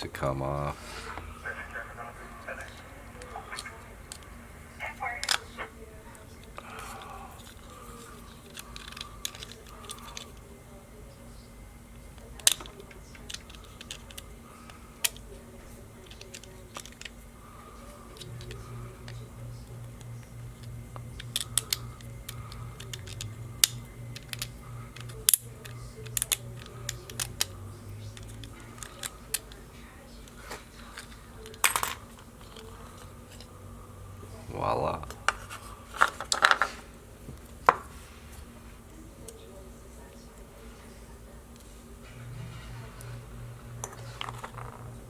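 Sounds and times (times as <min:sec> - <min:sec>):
small parts clicking and tapping: 0:06.4 - 0:10.5, 0:12.0 - 0:17.3, 0:18.0 - 0:33.5, 0:35.1 - 0:37.9, 0:42.9 - 0:45.0.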